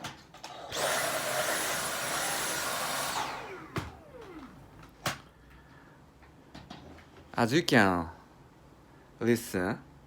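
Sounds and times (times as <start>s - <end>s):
handheld vacuum whine: 0.4s - 5.0s
vacuum motor winding down: 0.7s - 4.9s.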